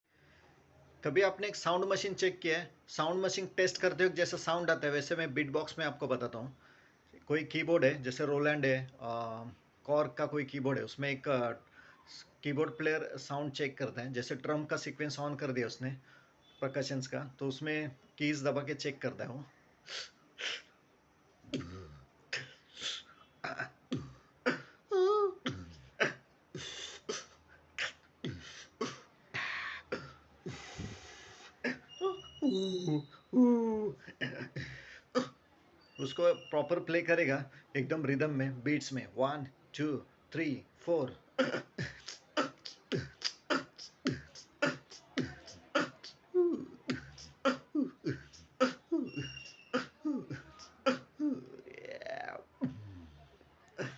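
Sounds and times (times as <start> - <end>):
vocal beatboxing drum hits: 21.5 - 22.5, 23.5 - 24.7, 25.5 - 31.2, 41.4 - 51.1, 52.6 - 53.0.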